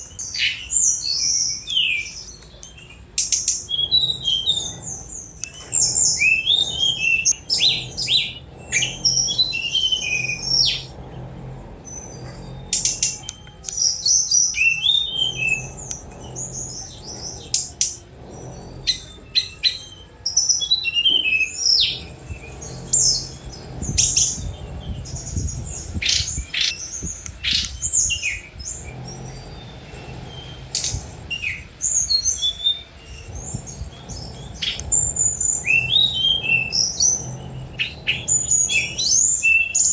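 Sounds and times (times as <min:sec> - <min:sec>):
bird singing high chirps: 0:00.0 - 0:39.9.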